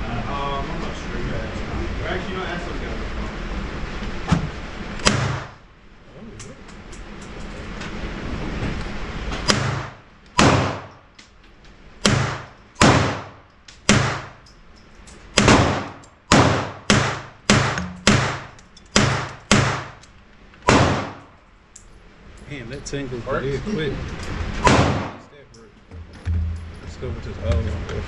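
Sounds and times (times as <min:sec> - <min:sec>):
gunshots with echo: 0:12.1 - 0:14.4, 0:15.4 - 0:20.0, 0:20.7 - 0:21.3, 0:24.6 - 0:25.3.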